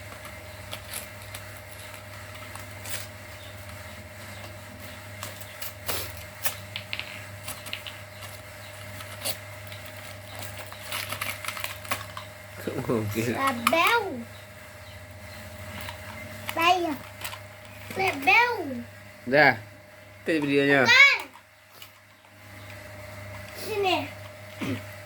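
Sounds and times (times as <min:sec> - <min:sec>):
low electrical hum: 0:00.0 - 0:25.0
small hard objects clicking: 0:06.4 - 0:12.3.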